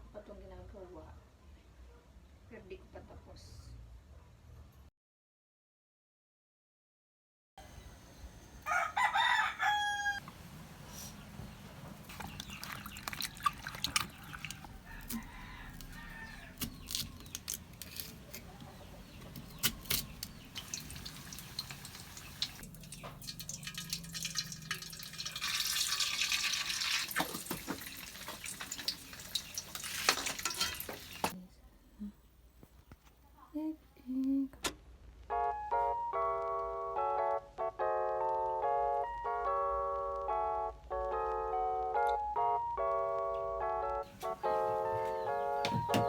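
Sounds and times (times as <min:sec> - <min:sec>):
rooster crowing: 0:08.6 - 0:10.3, 0:13.2 - 0:16.6.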